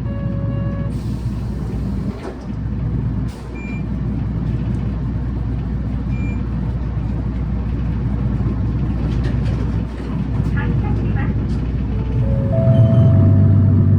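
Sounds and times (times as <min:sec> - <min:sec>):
bus engine rumble: 0:00.0 - 0:13.9
short high beeps: 0:12.3 - 0:13.9.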